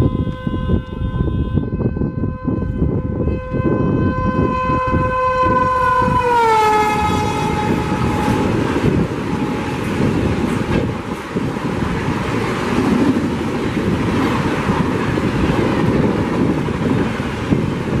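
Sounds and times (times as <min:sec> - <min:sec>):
locomotive horn blast: 0:00.0 - 0:11.0
train wheel beats: 0:06.9 - 0:18.0.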